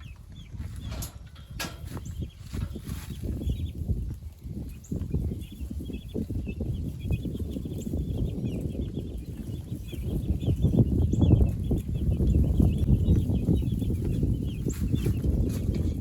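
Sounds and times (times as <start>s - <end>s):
chickens peeping and clucking: 0.0s - 16.0s.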